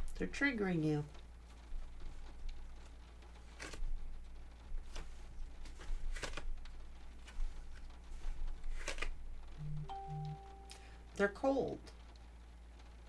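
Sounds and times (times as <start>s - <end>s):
low electrical hum: 0.0s - 13.0s
cards flicking and rustling: 1.1s - 9.6s.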